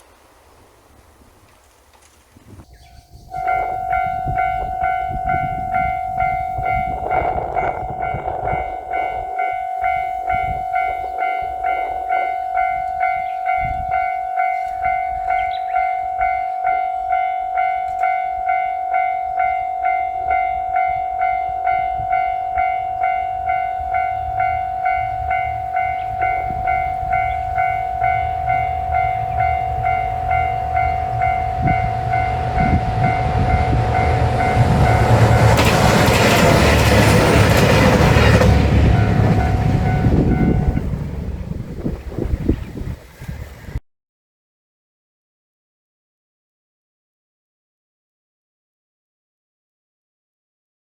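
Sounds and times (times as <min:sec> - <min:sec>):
diesel train passing: 0:00.0 - 0:01.7, 0:02.8 - 0:43.8
level crossing bell ringing: 0:02.8 - 0:35.6, 0:37.5 - 0:41.0.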